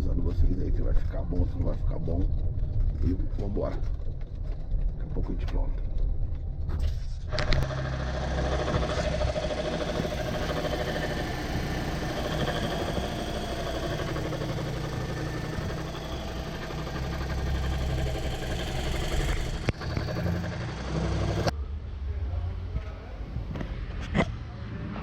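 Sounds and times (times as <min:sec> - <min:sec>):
car engine running: 0:07.3 - 0:21.5.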